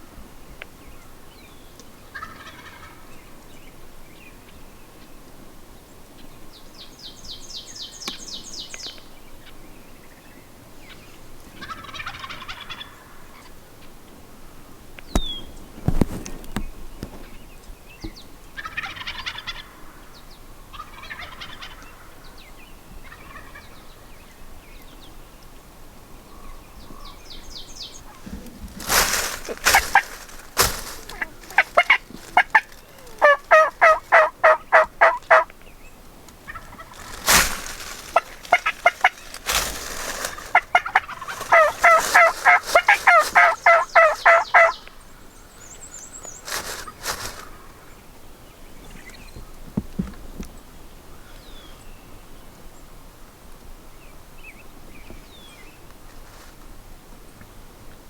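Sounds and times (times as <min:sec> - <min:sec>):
turkeys gobbling: 0:02.1 - 0:03.0, 0:11.6 - 0:13.5, 0:18.6 - 0:20.0, 0:20.7 - 0:22.1, 0:23.0 - 0:23.7, 0:27.8 - 0:35.5, 0:36.4 - 0:44.9
turkeys yelping: 0:02.1 - 0:03.0, 0:11.6 - 0:13.2, 0:18.6 - 0:19.8, 0:20.7 - 0:22.1, 0:27.8 - 0:35.5, 0:36.4 - 0:44.9.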